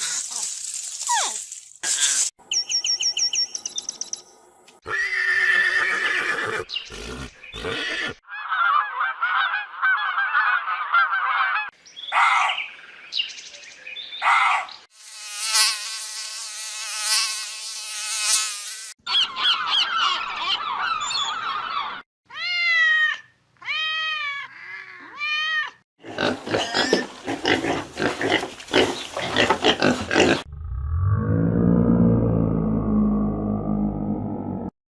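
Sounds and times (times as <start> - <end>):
long buzzing drone: 30.5 - 34.7.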